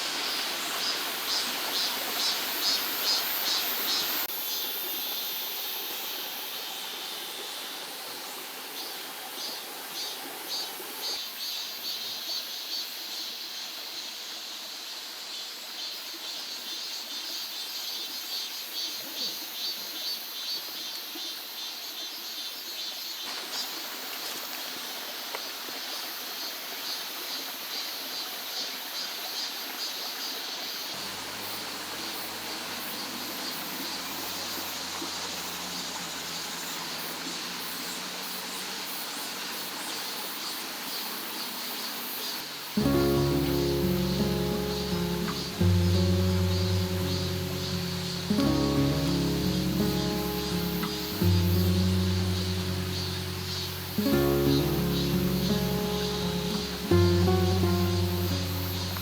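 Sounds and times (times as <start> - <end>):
stream running over rocks: 0.0 - 20.8, 23.2 - 59.0
high pulsing chirping: 42.8 - 59.0.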